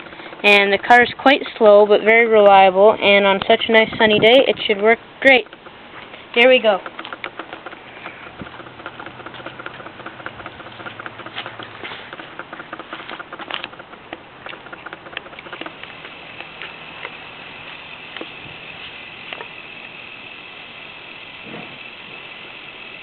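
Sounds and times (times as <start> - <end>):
plastic gears clicking and rattling: 6.4 - 23.0.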